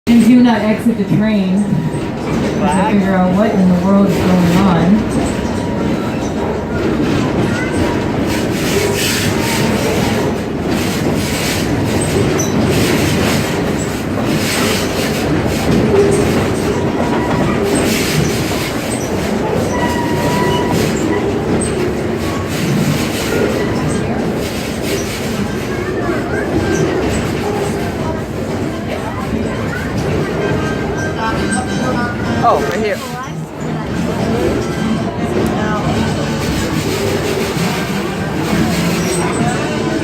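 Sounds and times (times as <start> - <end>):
train wheels rumbling: 0.1 - 40.0
wheels clacking over rail joints: 1.2 - 40.0
thin wheel squeal: 17.1 - 21.3.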